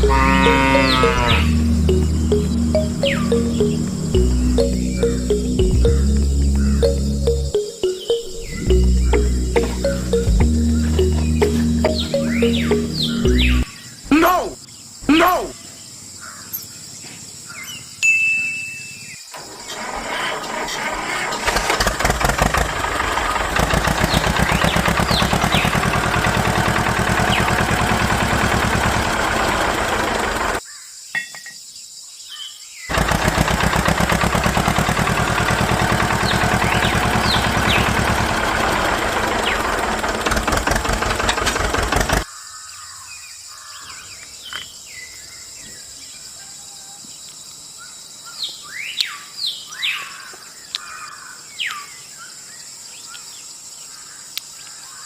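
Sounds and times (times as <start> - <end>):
birds chirping: 0.0 - 18.0, 23.2 - 30.7, 34.5 - 46.2
small motor running: 21.7 - 30.6, 32.9 - 42.2.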